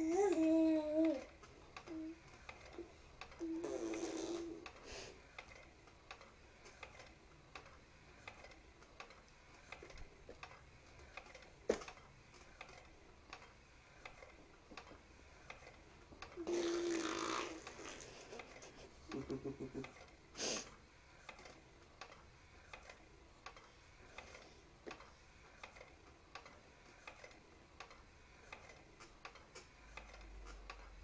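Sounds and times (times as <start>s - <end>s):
child's buzzing vocal sounds: 0.0s - 1.3s, 2.8s - 4.6s, 16.4s - 18.2s.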